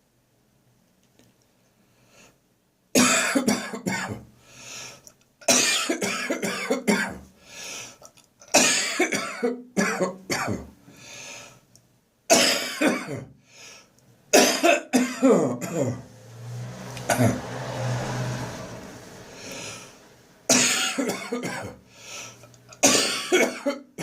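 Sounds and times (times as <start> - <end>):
person coughing: 3.0 - 4.2, 5.5 - 7.2, 8.5 - 10.7, 12.3 - 13.3, 14.4 - 16.0, 20.5 - 21.8, 22.8 - 24.0
person drawing breath: 4.4 - 5.1, 7.4 - 8.2, 10.9 - 11.7, 13.4 - 14.0, 19.3 - 20.1, 21.8 - 22.6.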